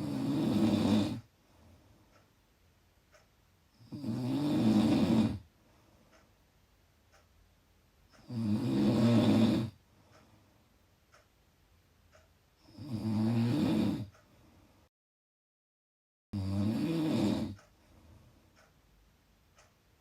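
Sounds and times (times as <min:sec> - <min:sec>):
person snoring: 0:00.0 - 0:01.3, 0:03.8 - 0:05.5, 0:08.2 - 0:09.8, 0:12.6 - 0:14.1, 0:16.4 - 0:17.6
faint clicks: 0:02.1 - 0:02.4, 0:03.1 - 0:03.4, 0:06.1 - 0:06.4, 0:07.1 - 0:07.4, 0:10.1 - 0:10.4, 0:11.1 - 0:11.4, 0:12.1 - 0:12.4, 0:17.5 - 0:17.8, 0:18.5 - 0:18.9, 0:19.5 - 0:19.8.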